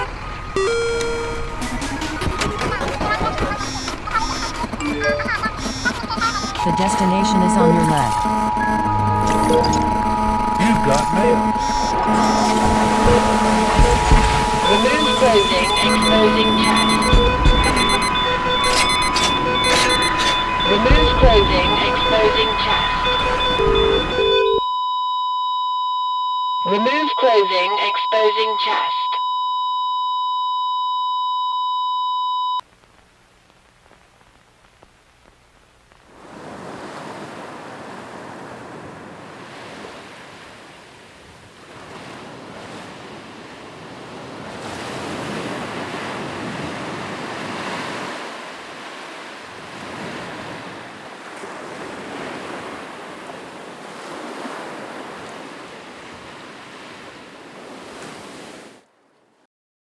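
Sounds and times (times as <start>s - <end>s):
steady electronic tone: 0.0s - 24.6s
ocean waves washing in: 36.2s - 58.8s.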